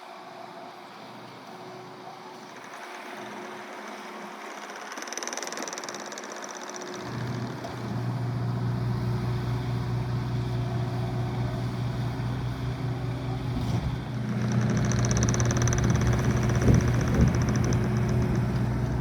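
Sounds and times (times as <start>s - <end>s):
diesel engine humming: 7.0s - 19.0s.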